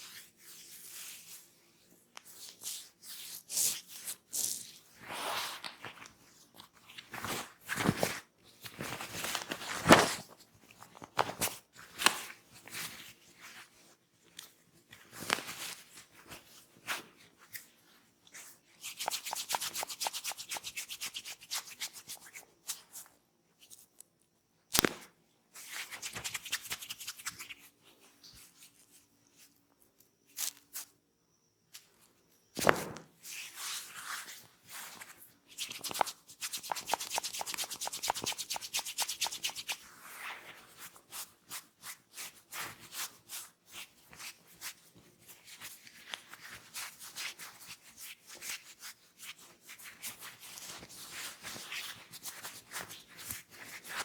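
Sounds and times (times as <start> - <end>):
sharp snap: 24.7 - 25.1
hands rubbing hair: 34.9 - 39.8.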